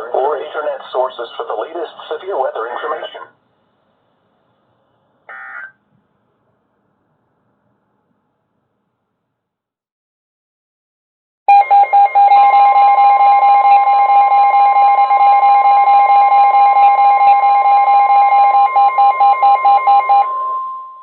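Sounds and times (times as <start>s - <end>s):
steady warning alarm tone: 11.5s - 21.0s.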